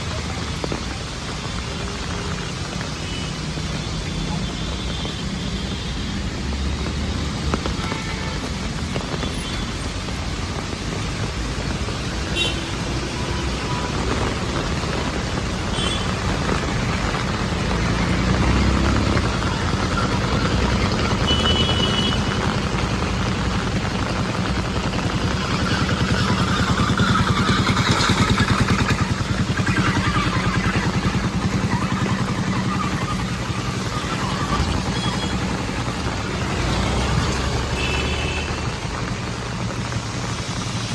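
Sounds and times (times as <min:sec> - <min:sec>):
passing traffic: 0:00.0 - 0:40.9
vehicle engine running: 0:13.6 - 0:40.9.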